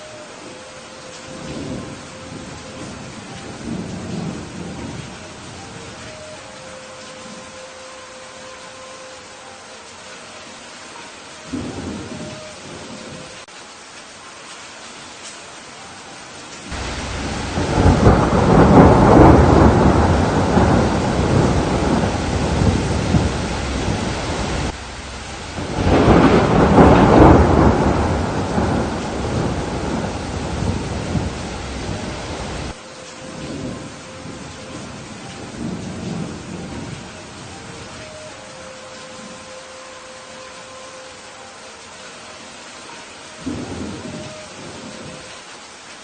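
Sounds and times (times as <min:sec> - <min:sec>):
steady rain: 0:00.0 - 0:46.0
thunder rumbling: 0:01.2 - 0:06.5, 0:11.5 - 0:13.4, 0:16.7 - 0:38.3, 0:43.4 - 0:45.3.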